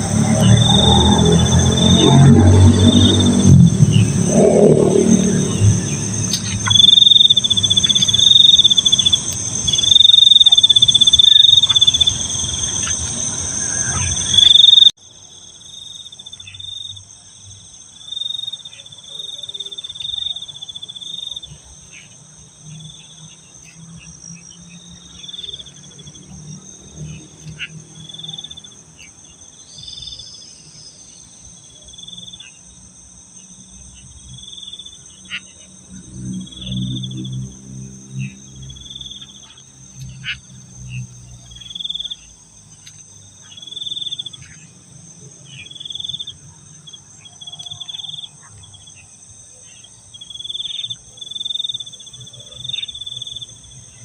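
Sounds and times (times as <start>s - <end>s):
low rumble: 0.0s - 14.9s
high insect buzz: 0.0s - 15.0s
crickets trilling: 0.0s - 54.0s.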